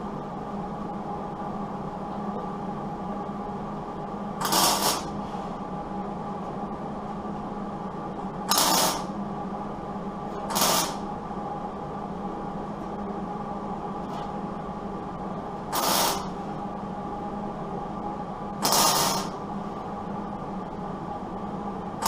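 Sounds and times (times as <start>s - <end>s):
steady hum: 0.0s - 22.0s
welding hissing crackle: 4.4s - 5.2s, 8.5s - 9.1s, 10.5s - 11.1s, 15.7s - 16.3s, 18.6s - 19.4s.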